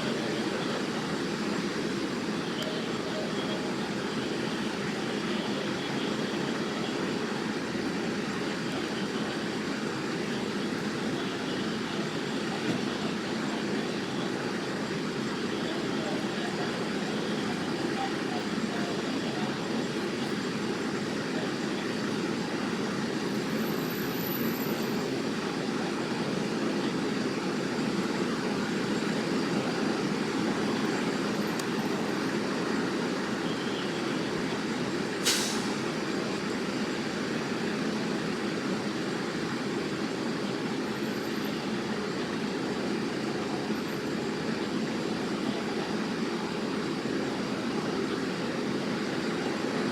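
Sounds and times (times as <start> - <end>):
vehicles running in street: 0.0 - 49.9.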